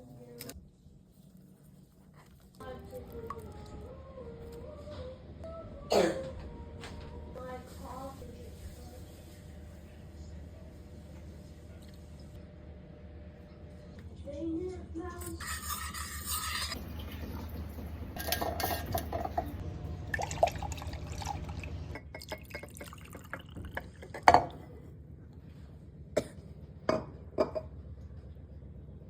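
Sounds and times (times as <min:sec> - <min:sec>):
liquid poured into a glass: 0:20.1 - 0:24.2.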